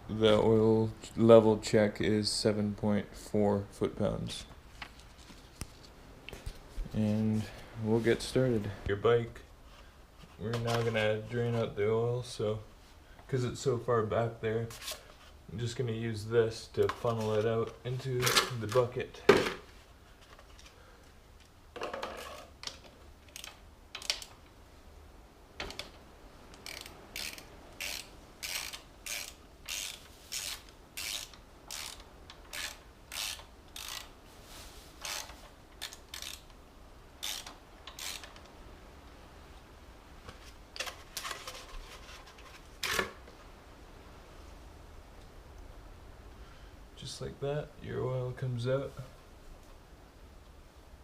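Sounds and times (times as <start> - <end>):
ratchet wrench clicking: 23.3 - 24.3, 26.6 - 34.1, 35.0 - 36.5, 37.2 - 38.4.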